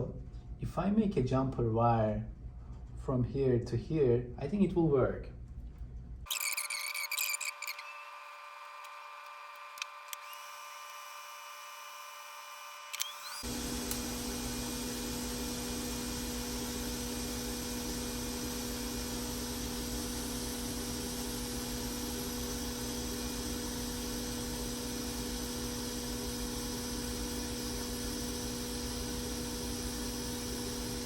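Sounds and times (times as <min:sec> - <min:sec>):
electrical hum with hiss: 0:08.5 - 0:31.0.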